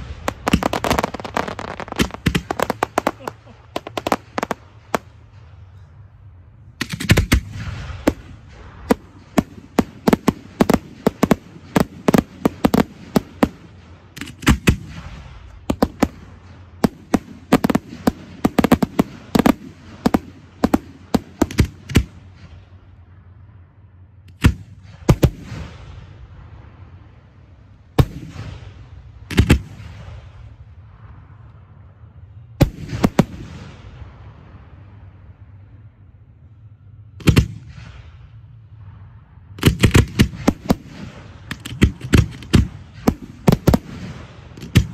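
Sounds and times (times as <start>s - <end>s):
fireworks bangs: 0.0s - 5.8s, 6.8s - 22.8s, 32.2s - 35.1s, 37.2s - 44.9s.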